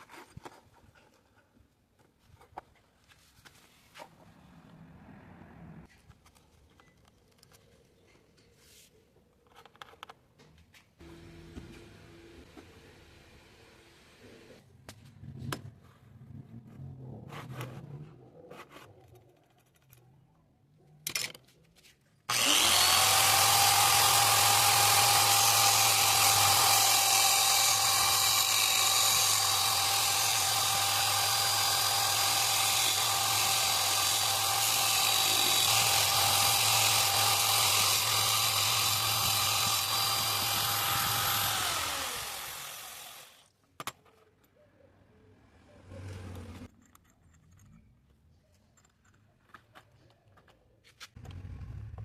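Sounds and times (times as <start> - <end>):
power tool motor running: 22.3 - 43.4.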